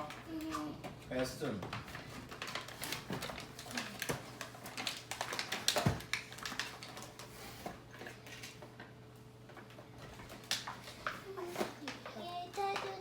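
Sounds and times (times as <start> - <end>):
packaging crinkling: 1.9 - 8.6.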